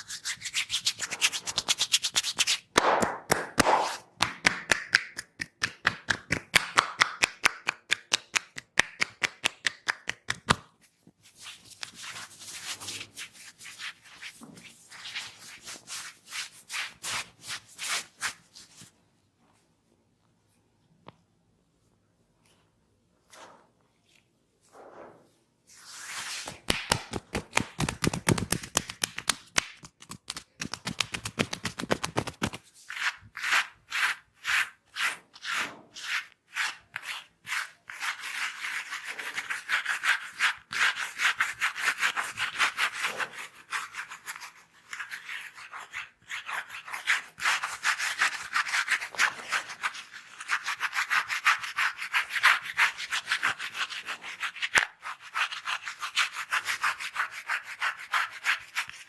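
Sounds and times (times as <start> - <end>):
hands rubbing hair and scalp: 0.0 - 4.0, 11.2 - 19.0, 25.7 - 43.0.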